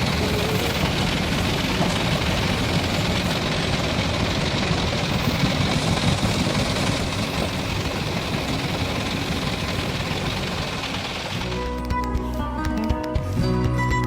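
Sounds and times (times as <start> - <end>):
small tractor engine running: 0.0 - 14.0
music: 11.4 - 14.0.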